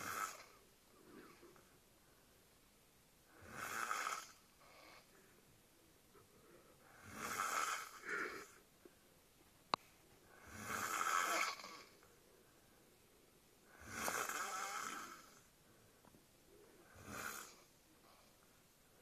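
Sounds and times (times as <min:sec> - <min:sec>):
raspy snoring: 0:00.0 - 0:01.5, 0:03.3 - 0:05.2, 0:06.8 - 0:08.6, 0:10.3 - 0:12.0, 0:13.7 - 0:15.5, 0:16.8 - 0:18.3.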